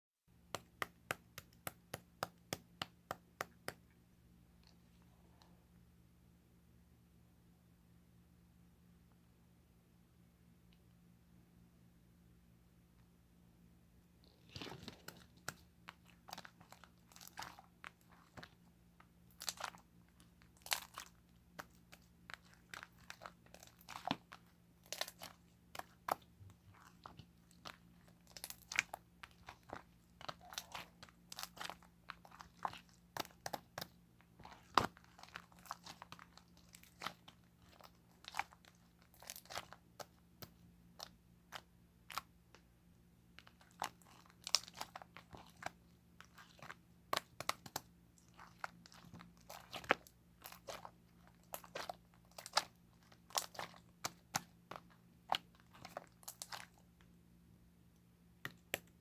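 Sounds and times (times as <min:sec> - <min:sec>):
faint low hum: 0:00.3 - 0:59.0
crisp crunches: 0:14.2 - 0:18.6.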